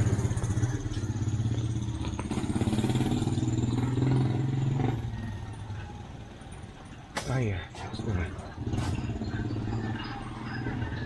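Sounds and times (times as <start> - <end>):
motorcycle engine puttering: 0.0 - 6.0, 6.9 - 11.0.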